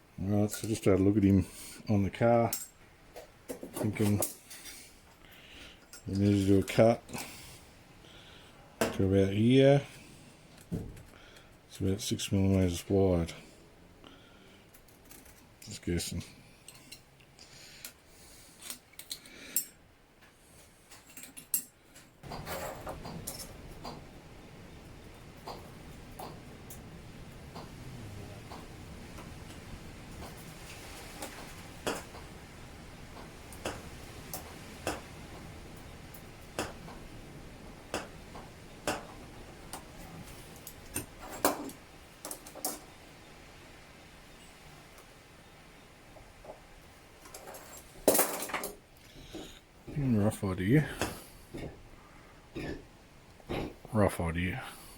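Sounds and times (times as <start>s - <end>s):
metal parts clicking and clinking: 14.7s - 15.7s, 18.6s - 19.8s, 20.9s - 24.0s, 47.2s - 48.8s
hand tools clicking and tapping: 25.0s - 27.8s, 28.4s - 32.3s, 33.1s - 35.1s, 35.8s - 37.1s, 37.9s - 42.9s.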